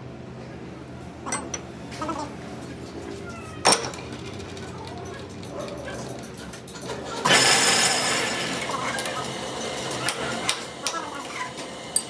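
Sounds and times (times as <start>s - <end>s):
metal parts clinking and knocking: 1.3s - 1.7s, 3.7s - 12.0s.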